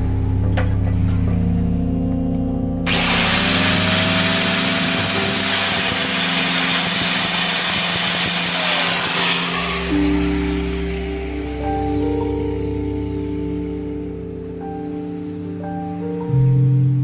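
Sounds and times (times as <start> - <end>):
background music: 0.0 - 17.0
power tool whining and grinding: 2.9 - 12.4.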